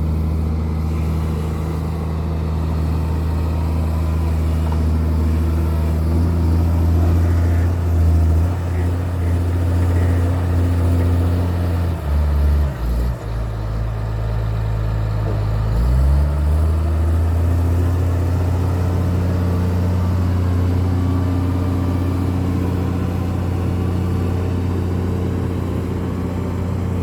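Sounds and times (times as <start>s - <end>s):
wheel loader diesel engine: 0.0s - 27.0s.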